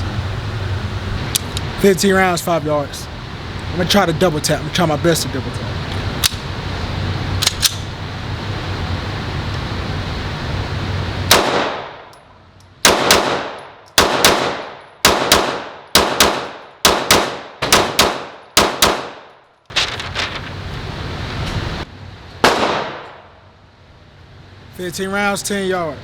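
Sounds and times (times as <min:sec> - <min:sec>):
steady rushing noise: 0:00.0 - 0:26.0
handgun shots echoing: 0:12.8 - 0:19.4, 0:22.4 - 0:23.2.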